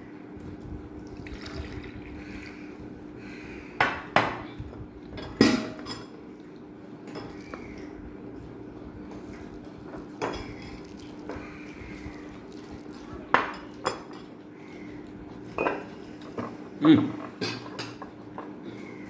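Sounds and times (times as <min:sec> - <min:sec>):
steady low hum: 0:00.0 - 0:19.0
cooking pots and utensils clinking: 0:05.1 - 0:06.2, 0:13.3 - 0:14.4, 0:15.4 - 0:18.6.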